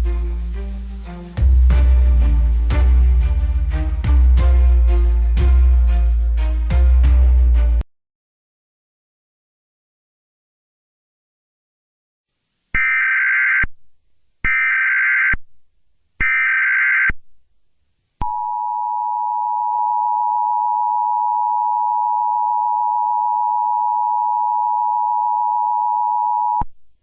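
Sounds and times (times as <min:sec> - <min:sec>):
digital data tone bursts: 0:12.8 - 0:13.6.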